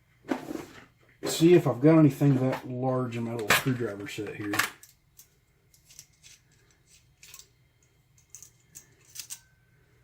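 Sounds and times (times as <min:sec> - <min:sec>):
metal screwdriver bits clinking: 0:03.5 - 0:07.6, 0:08.2 - 0:09.5.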